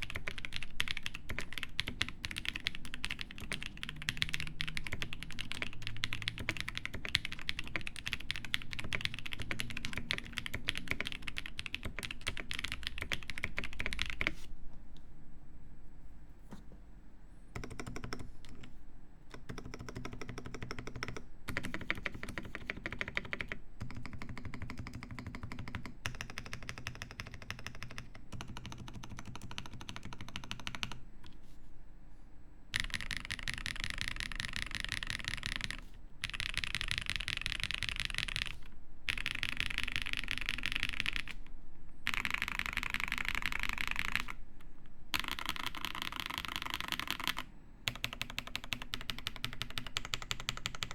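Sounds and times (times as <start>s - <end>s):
fast mechanical keyboard typing: 0.0s - 14.4s, 17.6s - 18.7s, 19.3s - 31.0s, 32.7s - 41.4s, 42.0s - 44.4s, 45.1s - 50.9s.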